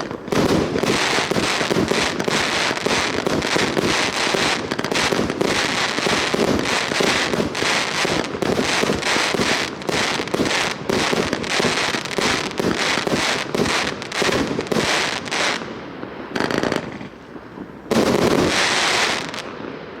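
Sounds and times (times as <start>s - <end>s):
firework cake pops and bangs: 0.0s - 15.6s.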